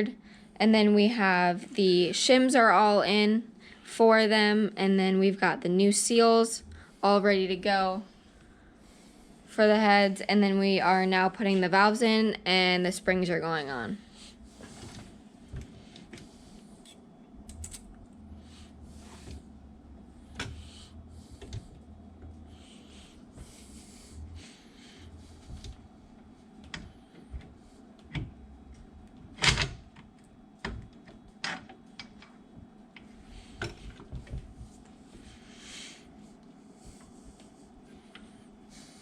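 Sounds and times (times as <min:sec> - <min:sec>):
low hum: 0:00.0 - 0:39.0.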